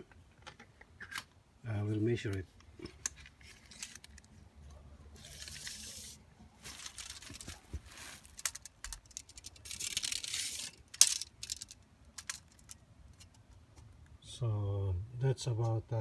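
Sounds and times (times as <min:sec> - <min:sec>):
tape measure rattling: 0:03.4 - 0:04.3, 0:05.2 - 0:13.4.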